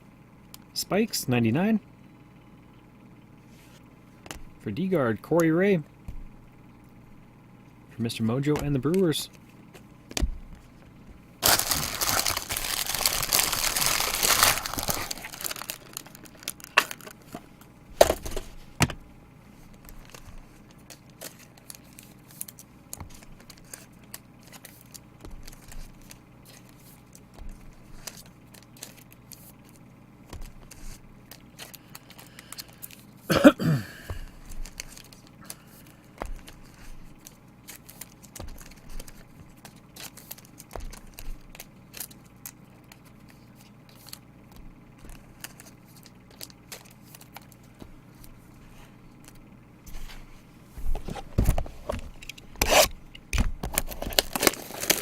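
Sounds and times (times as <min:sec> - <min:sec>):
wrapper tearing and crinkling: 0:11.4 - 0:17.3, 0:53.7 - 0:55.0
cards clicking and tapping: 0:19.7 - 0:33.0, 0:34.1 - 0:47.9.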